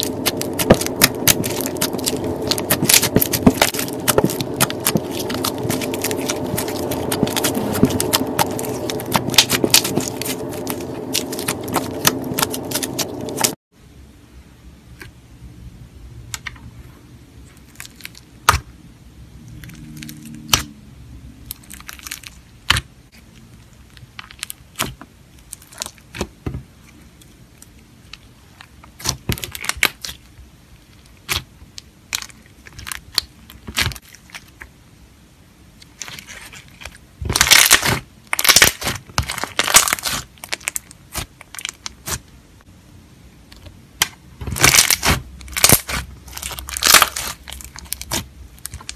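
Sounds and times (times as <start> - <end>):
slime popping and crackling: 0.0 - 13.6, 28.7 - 30.3, 35.8 - 42.2, 44.0 - 48.9.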